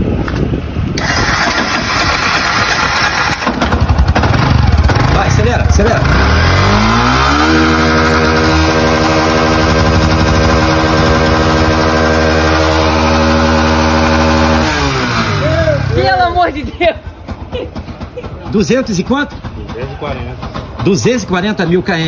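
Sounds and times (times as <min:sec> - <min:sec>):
motorcycle engine revving: 0:01.0 - 0:16.4.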